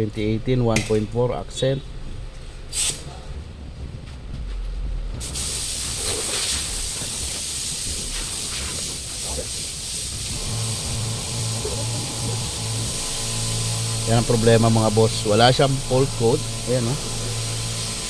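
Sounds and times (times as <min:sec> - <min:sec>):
steady hiss: 0:02.7 - 0:03.4, 0:05.2 - 0:18.0.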